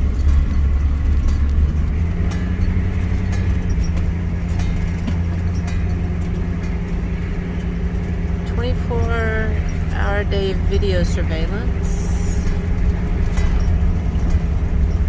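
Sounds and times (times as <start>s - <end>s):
clicks and rattles from bus body: 0.0s - 10.0s, 12.4s - 15.0s
bus engine running: 0.0s - 15.0s.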